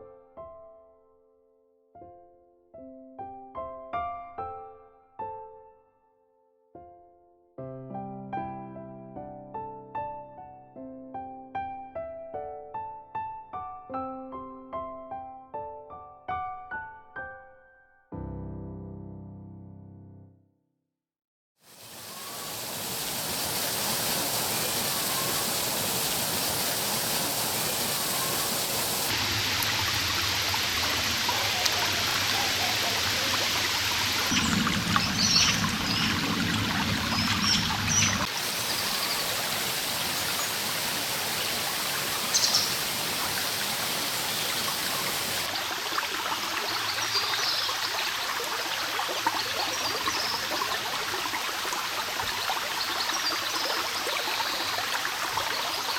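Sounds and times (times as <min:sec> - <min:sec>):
stream water rushing: 0:21.7 - 0:55.9
bird chirps: 0:34.2 - 0:36.3, 0:37.0 - 0:40.6, 0:41.4 - 0:43.0.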